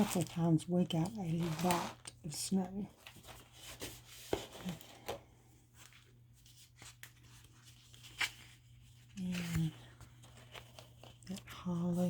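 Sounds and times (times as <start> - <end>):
paper rustling: 0.0 - 2.1, 3.0 - 12.0
low steady hum: 0.0 - 12.0.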